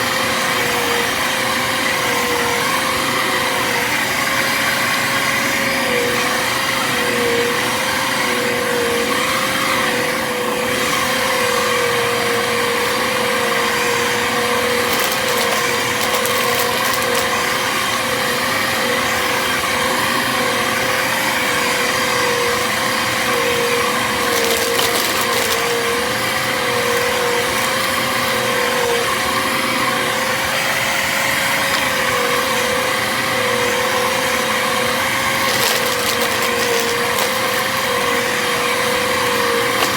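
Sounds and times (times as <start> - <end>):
vacuum cleaner whining: 0.0 - 39.9
foil confetti crackling: 14.7 - 17.6, 23.3 - 26.2, 35.2 - 39.9.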